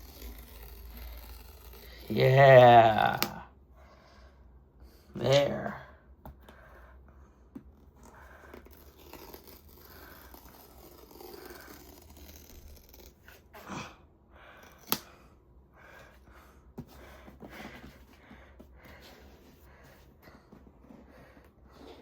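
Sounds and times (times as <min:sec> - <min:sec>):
paper rustling and scraping: 0:00.0 - 0:02.4.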